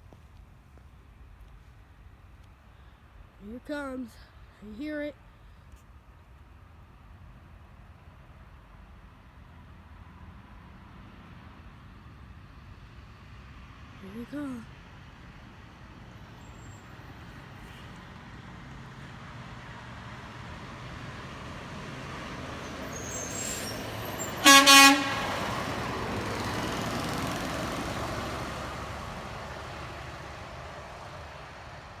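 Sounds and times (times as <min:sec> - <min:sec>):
garbage truck driving past: 0:16.3 - 0:32.0
truck horn honks: 0:24.3 - 0:25.6.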